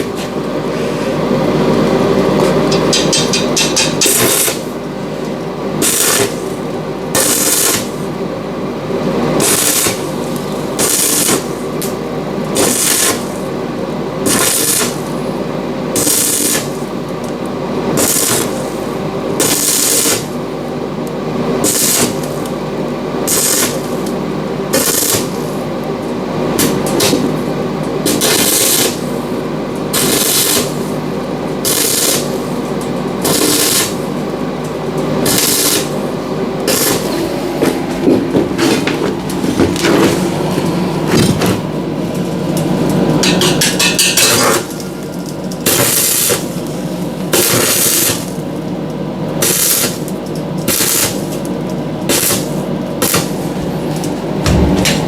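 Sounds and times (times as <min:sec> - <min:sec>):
arc welding crackling: 0:00.0 - 0:55.0
engine running: 0:00.0 - 0:55.0.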